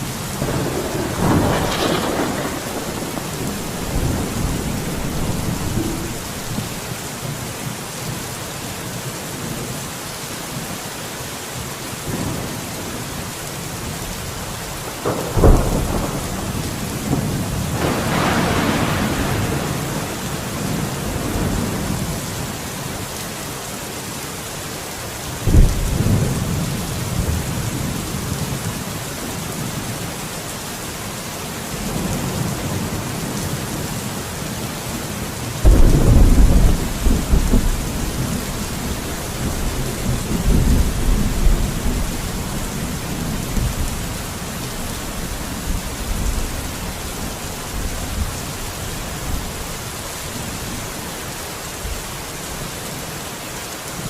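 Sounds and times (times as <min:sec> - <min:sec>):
thunder claps and rumble: 0:00.0 - 0:07.0, 0:14.9 - 0:22.9, 0:25.4 - 0:29.9, 0:35.5 - 0:49.7
heavy rain: 0:00.0 - 0:54.0.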